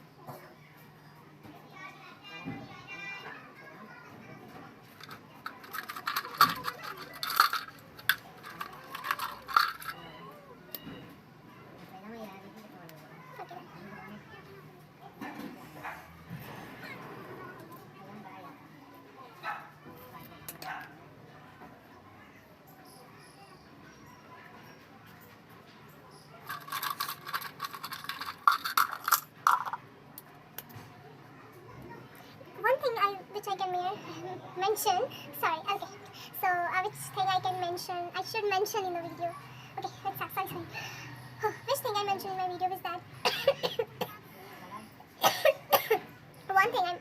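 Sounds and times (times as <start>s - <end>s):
small metal objects clinking: 5.0s - 10.1s, 26.4s - 29.8s
hair scratching and rustling: 5.5s - 9.9s, 26.5s - 29.7s.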